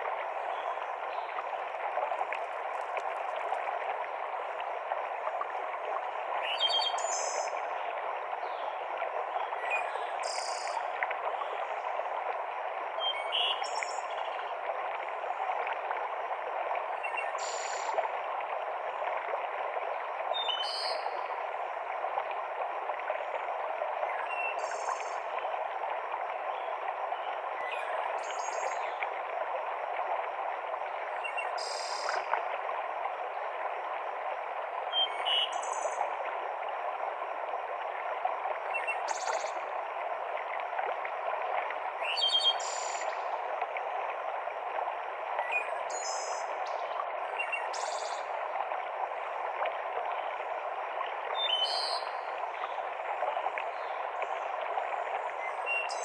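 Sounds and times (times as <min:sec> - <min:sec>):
stream cascading over rocks: 0:00.0 - 0:09.5.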